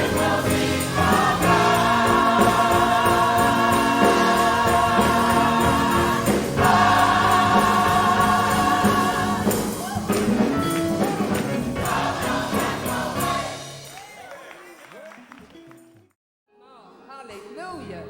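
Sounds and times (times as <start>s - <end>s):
gospel choir singing: 0.0s - 14.0s
church band playing: 0.0s - 14.6s.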